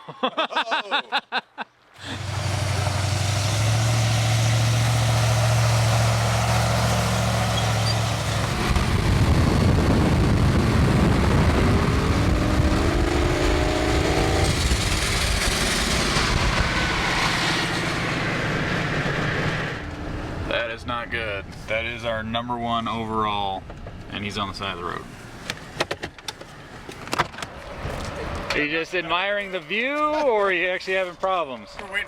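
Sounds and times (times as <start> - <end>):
road noise: 1.9 - 32.0
car engine drone: 2.0 - 22.3.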